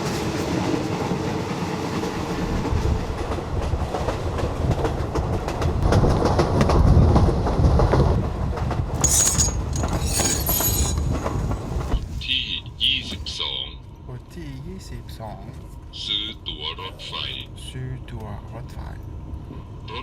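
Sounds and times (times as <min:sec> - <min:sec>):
train rumbling on rails: 0:00.0 - 0:13.2
wheels clattering: 0:09.0 - 0:12.0.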